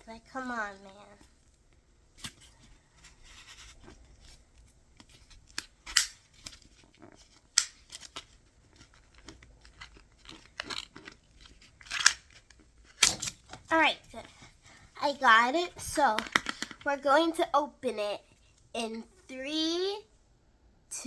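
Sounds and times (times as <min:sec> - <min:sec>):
plastic wrap crinkling and tearing: 0:01.2 - 0:13.7.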